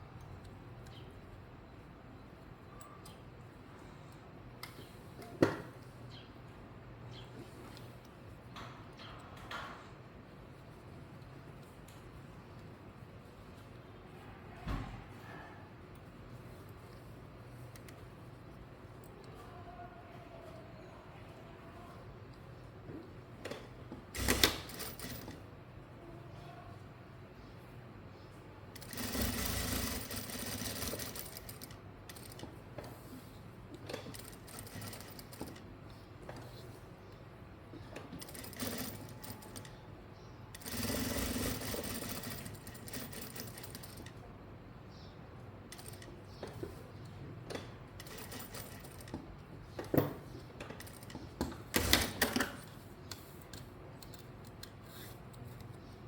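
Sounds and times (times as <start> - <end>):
sewing machine stitching: 24.2 - 25.4, 28.8 - 32.5, 34.0 - 35.6, 38.2 - 39.7, 40.5 - 44.1, 48.0 - 49.1, 50.8 - 52.5.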